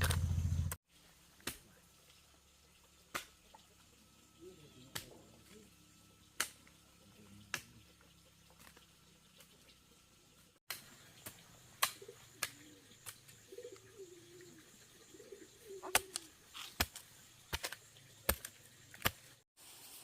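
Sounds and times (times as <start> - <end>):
bird cooing: 11.8 - 16.4.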